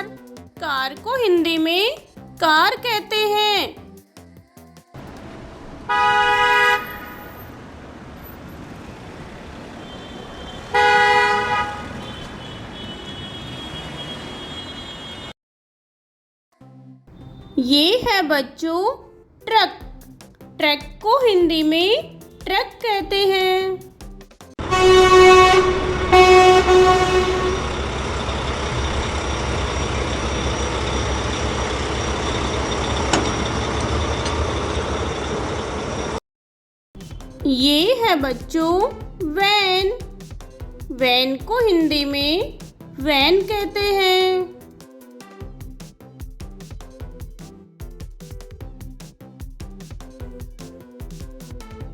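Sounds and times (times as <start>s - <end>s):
road traffic noise: 5.0s - 15.3s, 17.1s - 17.7s, 24.6s - 36.2s
car horn honking: 5.8s - 7.5s, 9.8s - 15.3s, 24.6s - 29.2s
truck engine rumbling: 24.6s - 36.2s.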